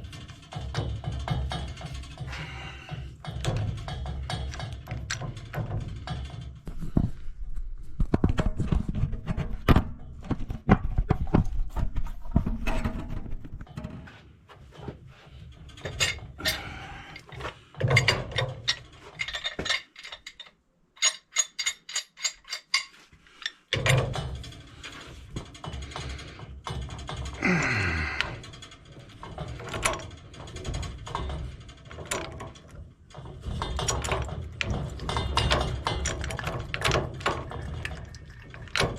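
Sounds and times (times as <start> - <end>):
wrenches clanking on metal fittings: 0.0 - 6.6, 15.2 - 38.9.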